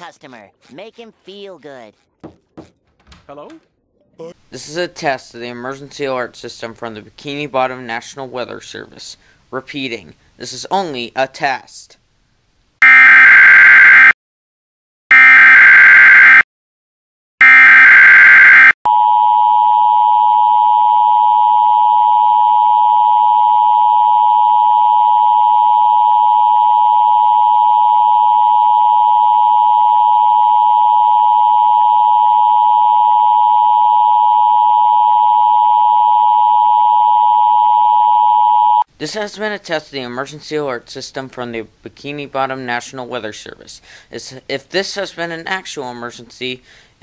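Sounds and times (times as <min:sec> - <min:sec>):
two-tone attention signal: 0:15.1 - 0:16.4, 0:17.4 - 0:19.2.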